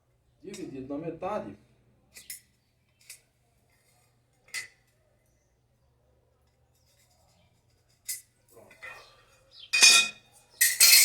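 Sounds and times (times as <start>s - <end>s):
hard objects clinking on workbench: 9.8s - 11.0s.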